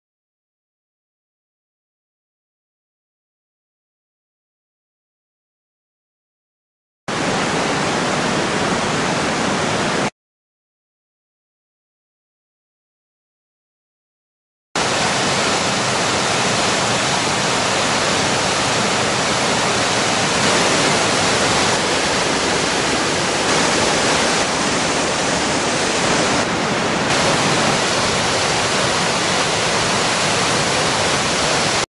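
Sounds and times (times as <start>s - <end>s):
waterfall roaring: 7.1s - 10.1s, 14.8s - 31.9s.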